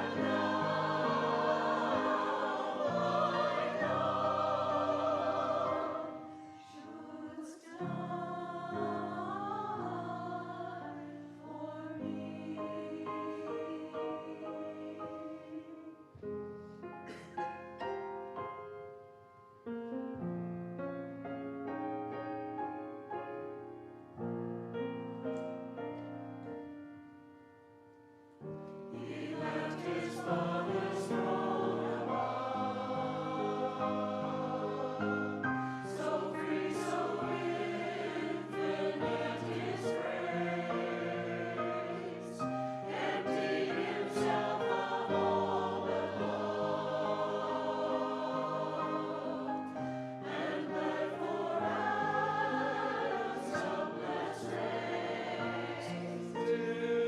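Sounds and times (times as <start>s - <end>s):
group of voices singing hymn: 0.0s - 16.2s, 28.9s - 57.0s.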